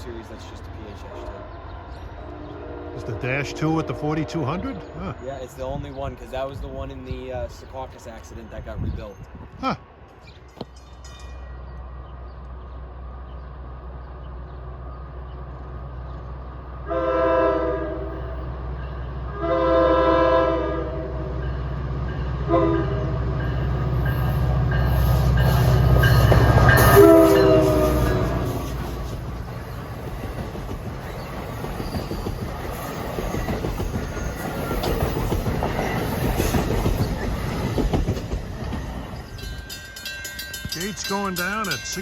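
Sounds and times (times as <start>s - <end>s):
train horn chord: 2.2s - 5.0s, 16.8s - 18.4s, 19.3s - 21.4s, 22.4s - 23.2s, 24.8s - 28.9s.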